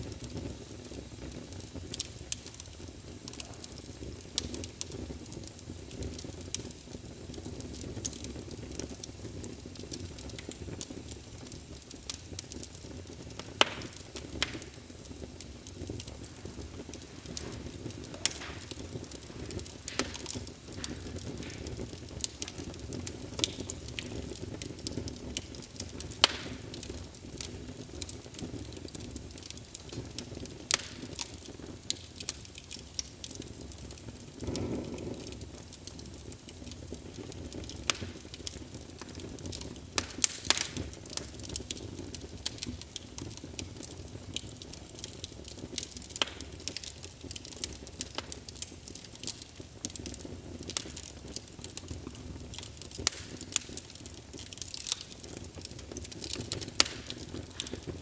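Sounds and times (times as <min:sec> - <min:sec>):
low rumble of flames: 0:00.0 - 0:58.0
wood fire crackling: 0:00.0 - 0:58.0
sharp pops: 0:13.6 - 0:14.8, 0:16.9 - 0:22.8.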